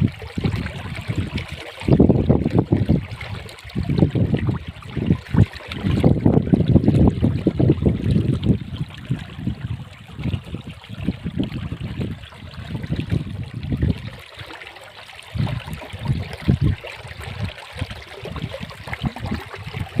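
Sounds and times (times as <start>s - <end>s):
river water flowing: 13.6s - 20.0s.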